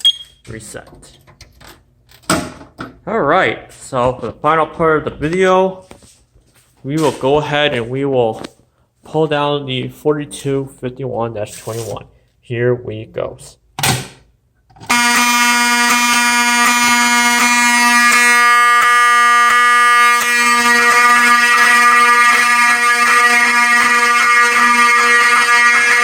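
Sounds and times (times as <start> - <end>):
fire alarm horns buzzing: 14.8 - 26.0.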